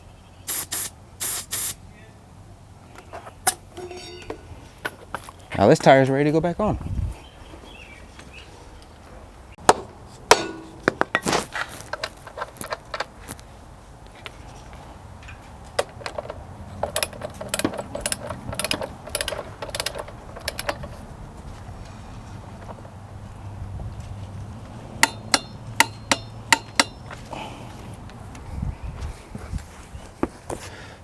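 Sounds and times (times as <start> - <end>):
metal tools knocking and clinking: 3.5 - 5.2, 15.2 - 21.0, 25.0 - 27.2.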